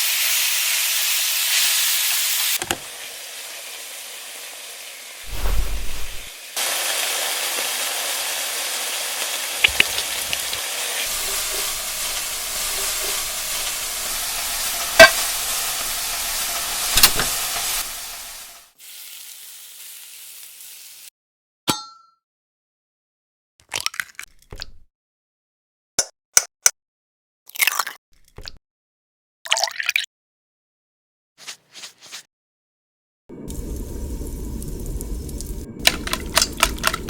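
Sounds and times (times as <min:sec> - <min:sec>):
food sizzling in frying pan: 0:00.0 - 0:21.1
utensils knocking and clicking: 0:35.8 - 0:37.0.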